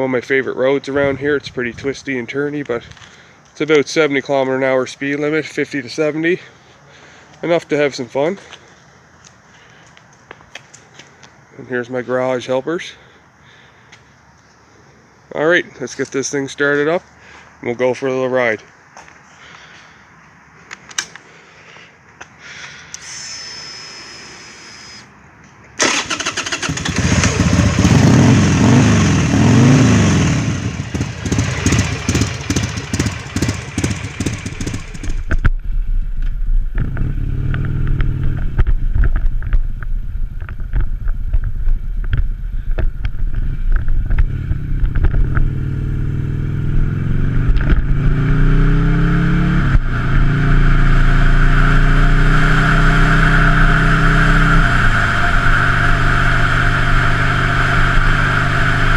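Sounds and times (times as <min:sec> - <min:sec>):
motorcycle engine revving: 0:25.8 - 0:35.4, 0:36.7 - 0:39.5, 0:42.9 - 0:58.9
wind noise: 0:35.0 - 0:45.6.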